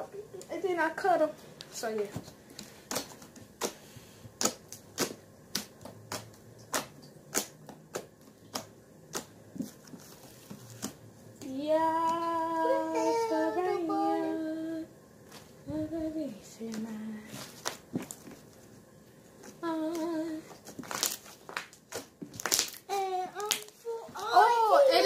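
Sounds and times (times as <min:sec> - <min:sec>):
girl singing: 0:11.4 - 0:14.9, 0:15.6 - 0:17.3, 0:19.6 - 0:20.5, 0:22.9 - 0:25.0.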